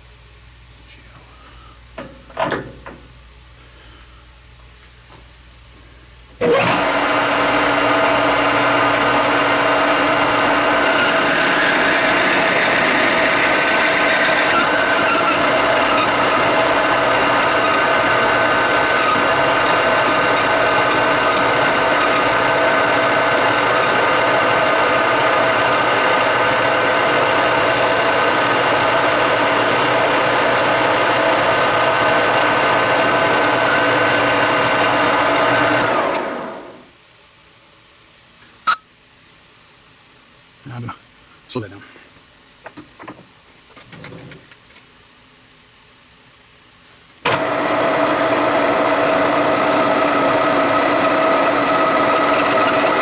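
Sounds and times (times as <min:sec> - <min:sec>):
machine tool whine: 0:06.4 - 0:36.9, 0:47.2 - 0:53.0
rasping metal cutting: 0:09.8 - 0:35.9, 0:47.4 - 0:53.0.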